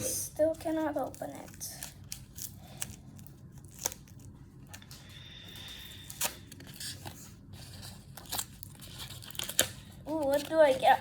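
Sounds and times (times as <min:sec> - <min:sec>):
plastic tearing: 0:01.0 - 0:04.8, 0:06.1 - 0:11.0.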